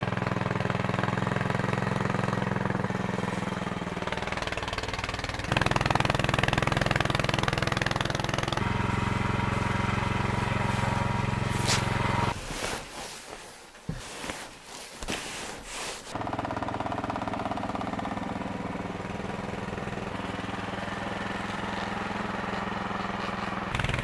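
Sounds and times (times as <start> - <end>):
snowblower engine running: 0.0 - 24.0.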